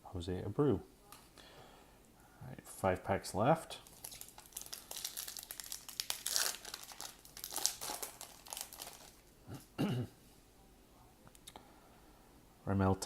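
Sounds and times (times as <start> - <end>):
wrapper crinkling and tearing: 3.8 - 9.3.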